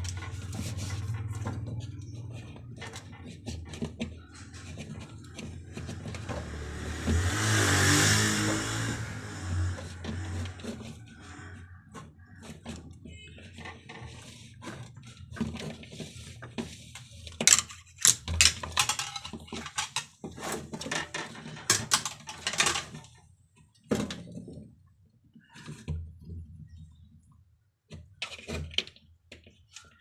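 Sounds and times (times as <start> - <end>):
hands clicking and clinking parts: 17.3 - 23.2.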